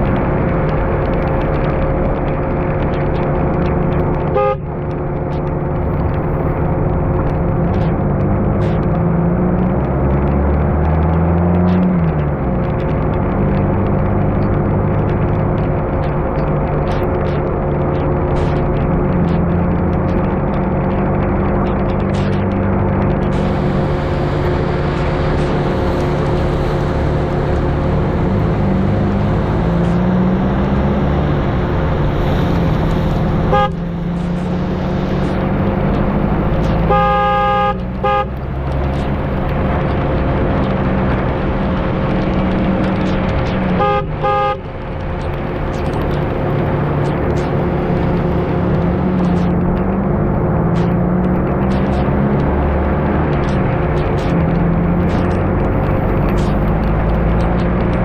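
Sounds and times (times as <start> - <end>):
car engine driving: 0.0 - 58.0
road noise: 0.0 - 58.0
short car horn toot: 4.4 - 4.6, 33.5 - 33.8, 36.9 - 38.3, 43.8 - 44.6.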